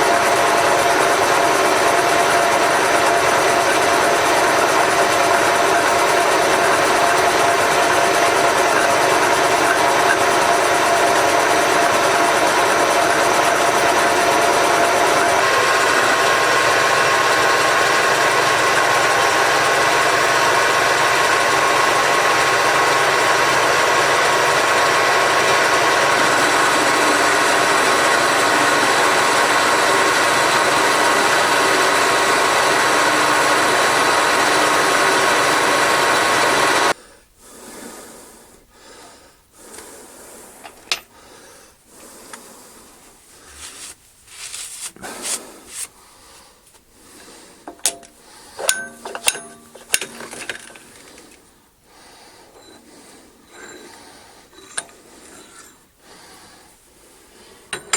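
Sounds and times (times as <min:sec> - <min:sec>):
machine tool whining: 0:00.0 - 0:37.0.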